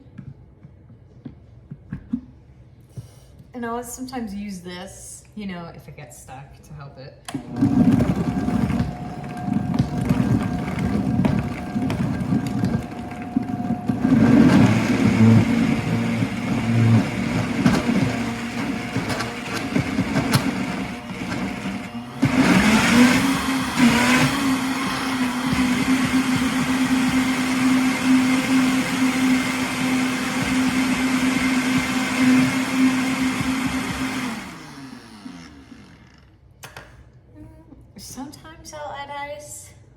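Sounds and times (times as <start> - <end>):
blender motor blending: 7.3 - 36.4.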